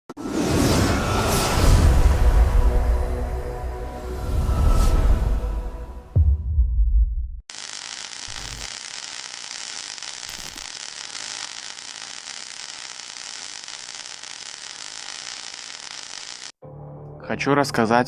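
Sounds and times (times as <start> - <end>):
static hiss: 7.5 - 16.6.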